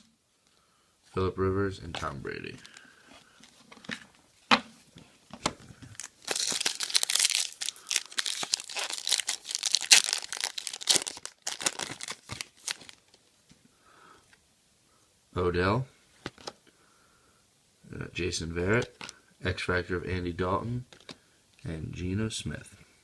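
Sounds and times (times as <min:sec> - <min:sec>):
card pack wrapper crinkling: 0:05.5 - 0:13.2.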